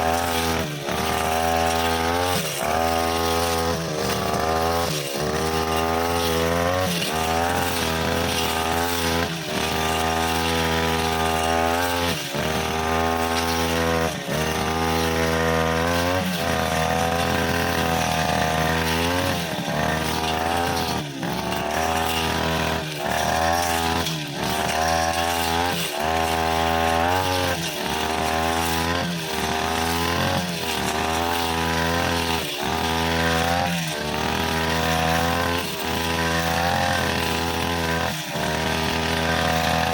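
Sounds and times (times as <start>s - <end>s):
brushcutter engine cutting grass: 0.0s - 39.9s.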